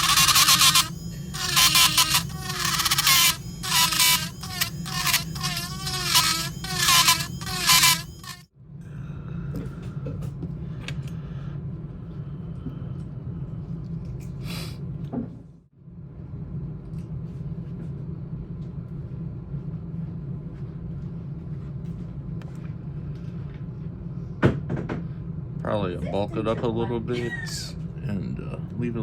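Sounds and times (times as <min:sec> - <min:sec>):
handpiece motor humming: 0:00.0 - 0:08.4.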